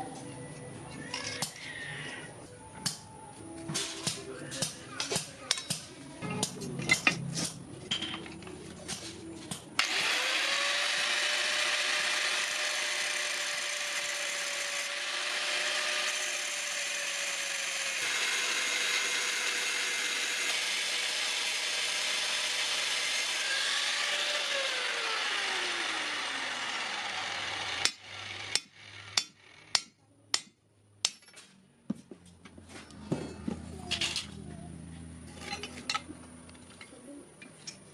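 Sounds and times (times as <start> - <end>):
electric power tool whining: 9.8 - 29.8.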